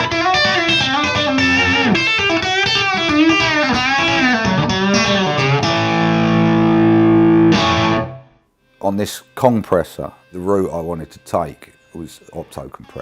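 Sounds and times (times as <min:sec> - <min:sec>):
electric guitar chord sustaining: 0:00.0 - 0:08.4
electric guitar picked notes: 0:00.0 - 0:08.4.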